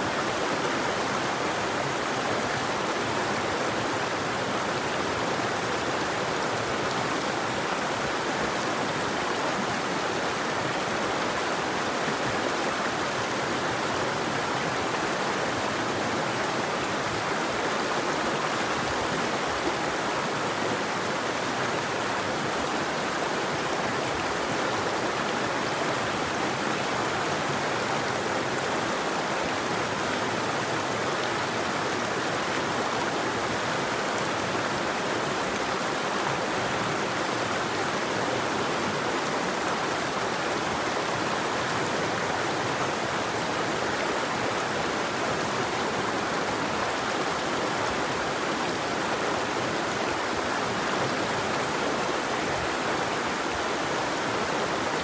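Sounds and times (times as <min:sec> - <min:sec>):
river water flowing over rocks: 0:00.0 - 0:55.0.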